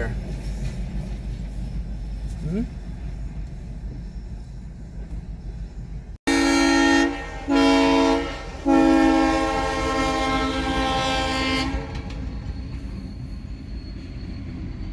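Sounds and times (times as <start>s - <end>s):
train rumbling: 0.0s - 14.9s
locomotive air horn chord: 6.3s - 12.0s.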